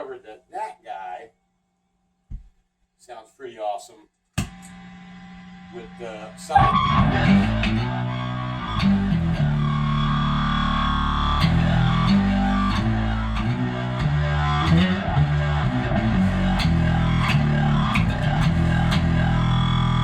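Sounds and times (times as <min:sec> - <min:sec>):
synth bass with filter sweep: 0:06.5 - 0:20.0.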